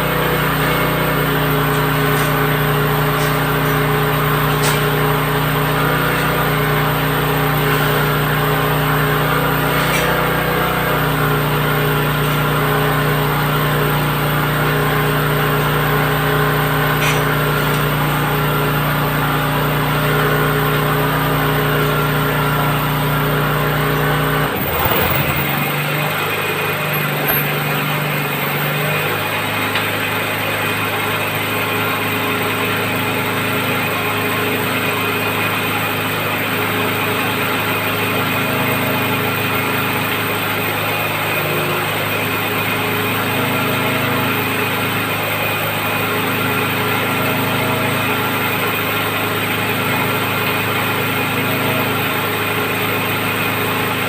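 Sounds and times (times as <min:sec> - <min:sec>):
drilling rig engine running: 0:24.4 - 0:27.3.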